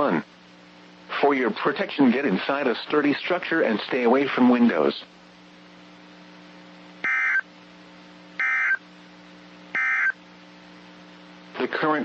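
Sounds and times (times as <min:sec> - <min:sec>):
faint low hum: 0:00.0 - 0:12.0
warbling digital data tones: 0:07.0 - 0:07.4, 0:08.4 - 0:08.8, 0:09.8 - 0:10.2.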